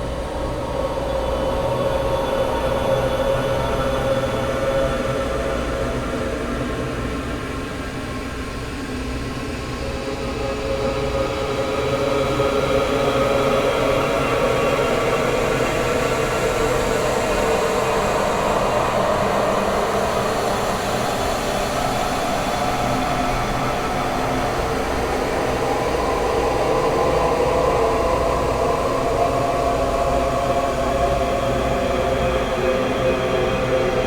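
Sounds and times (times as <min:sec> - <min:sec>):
dark ambient drone: 0:09.6 - 0:34.0.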